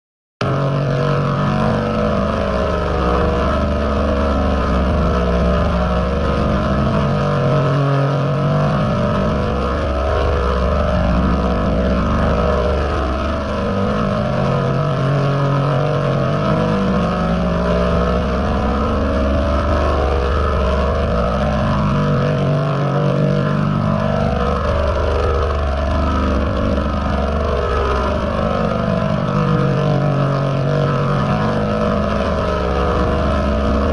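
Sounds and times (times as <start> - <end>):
deep hum tones: 0.4 - 33.9
distorted processed audio: 0.4 - 33.9.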